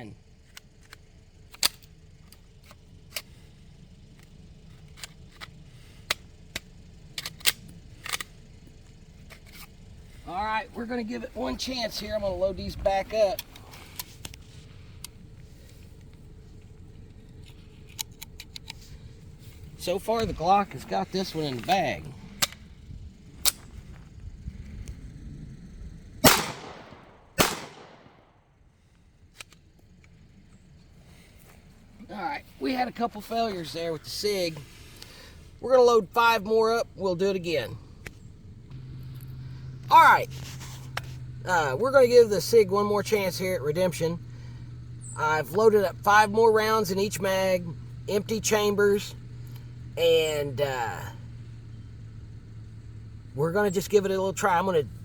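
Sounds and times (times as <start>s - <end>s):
pistol metallic clicks and rattles: 0.4s - 3.4s, 4.1s - 8.6s, 17.3s - 18.8s
echoing pistol shots: 26.2s - 28.3s.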